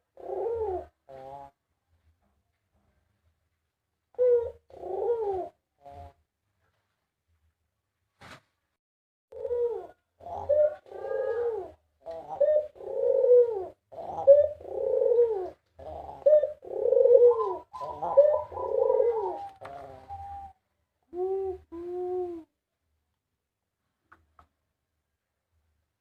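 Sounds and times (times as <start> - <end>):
dove cooing: 0.0 - 1.6, 4.1 - 6.2, 9.3 - 22.5.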